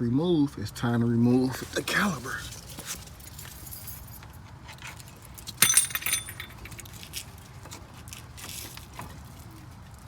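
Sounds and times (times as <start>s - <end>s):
metal clinking and rattling: 2.5s - 7.4s.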